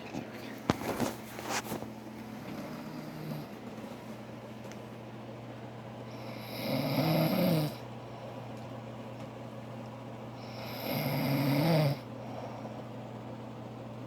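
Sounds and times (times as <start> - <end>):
woman snoring: 6.2 - 7.8, 10.4 - 12.1.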